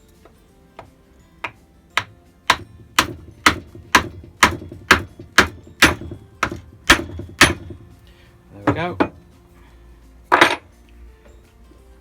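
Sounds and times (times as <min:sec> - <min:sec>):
hammer knocking on wood: 0:00.8 - 0:08.0, 0:08.6 - 0:09.2.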